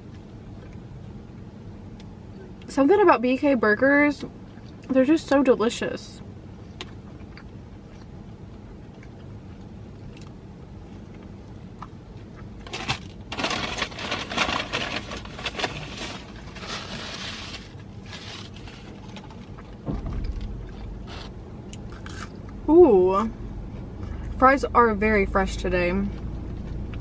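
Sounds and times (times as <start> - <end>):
crunching food: 6.7 - 22.6
paper packaging crinkling: 12.7 - 19.6.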